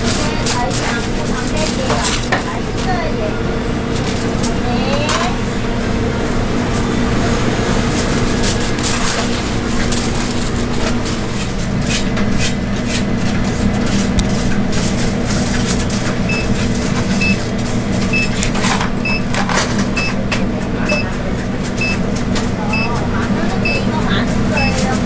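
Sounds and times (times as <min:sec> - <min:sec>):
steady machine hum: 0:00.0 - 0:25.0
clicks and clatter: 0:08.2 - 0:23.8.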